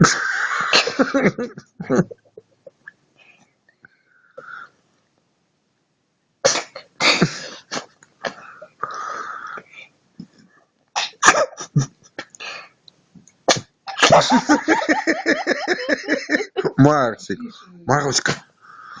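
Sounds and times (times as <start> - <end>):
cat sneezing: 6.4 - 7.9, 11.0 - 11.8, 13.5 - 14.4
person's voice: 15.6 - 18.4.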